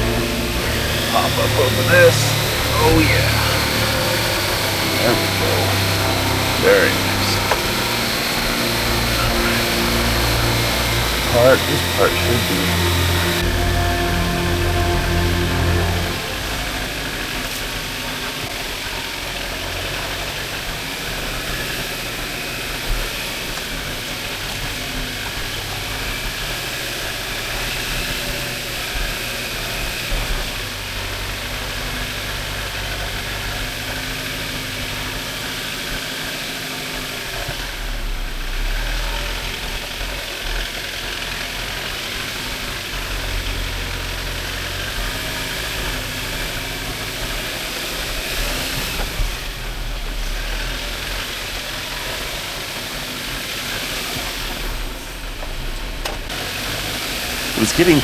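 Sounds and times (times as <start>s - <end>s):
constant hiss: 0.0s - 17.4s.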